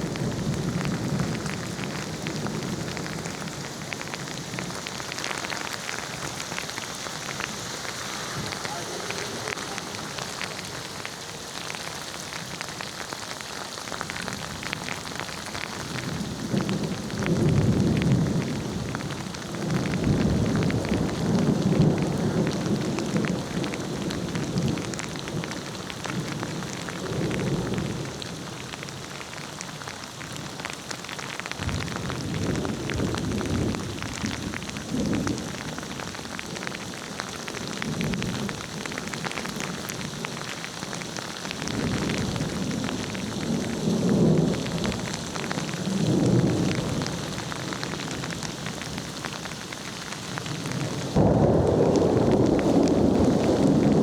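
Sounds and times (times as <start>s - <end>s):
rolling thunder: 0.0s - 12.6s, 14.0s - 25.6s, 31.6s - 36.8s, 50.4s - 54.0s
rain pattering: 0.0s - 54.0s.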